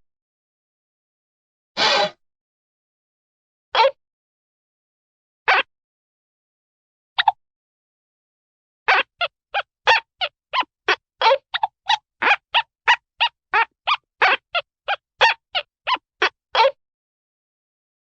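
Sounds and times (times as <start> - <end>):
cartoon goose-like honking: 8.9 - 16.8.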